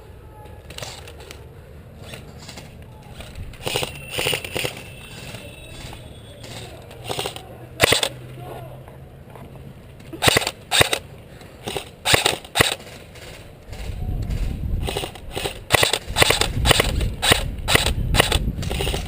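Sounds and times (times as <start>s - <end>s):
airsoft gun shots: 3.2s - 8.2s, 10.2s - 11.0s, 11.7s - 19.0s.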